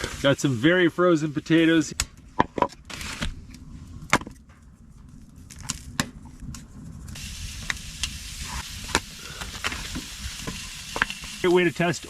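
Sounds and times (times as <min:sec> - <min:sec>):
food frying in oil: 0:07.1 - 0:12.0.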